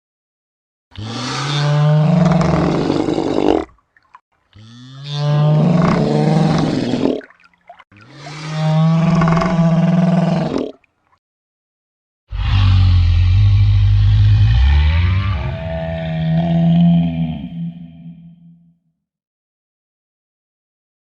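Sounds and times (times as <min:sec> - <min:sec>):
toy dinosaur electronic roar: 0:12.3 - 0:18.3.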